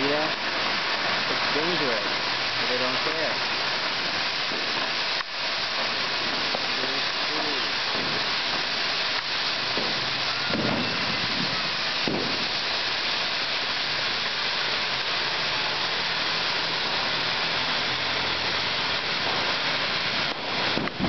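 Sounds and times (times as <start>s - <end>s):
firework hissing sparks: 0.0s - 21.0s
faint pops: 7.8s - 12.6s.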